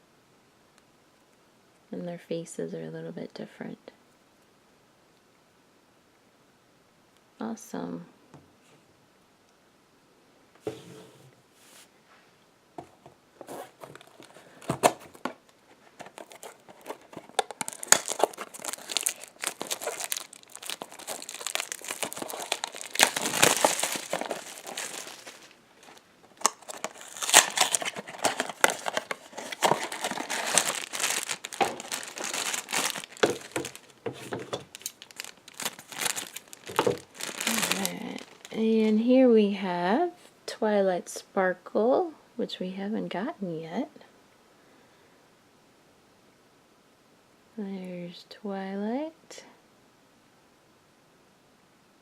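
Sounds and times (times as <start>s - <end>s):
packaging crinkling and tearing: 13.4s - 38.9s.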